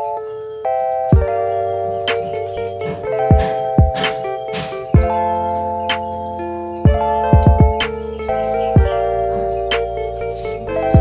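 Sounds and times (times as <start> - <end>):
bell-like keyboard chords: 0.0 - 11.0
deep kick-drum thump: 3.2 - 4.1, 6.9 - 7.8.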